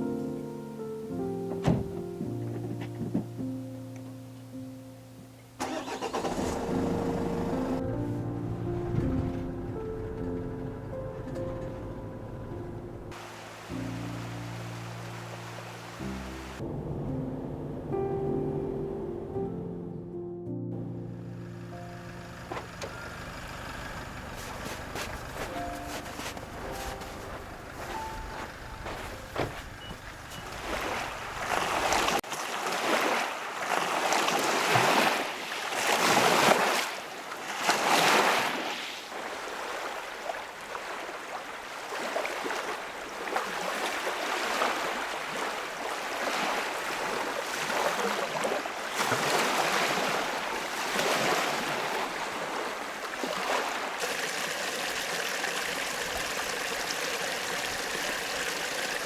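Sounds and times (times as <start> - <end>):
small waves washing onto shore: 13.1 - 16.6, 22.5 - 59.0.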